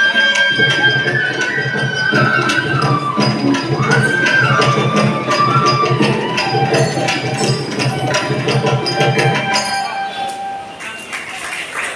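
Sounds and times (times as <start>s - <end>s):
wavering melody line: 0.0s - 10.8s
fast hand drum beat: 0.6s - 9.5s.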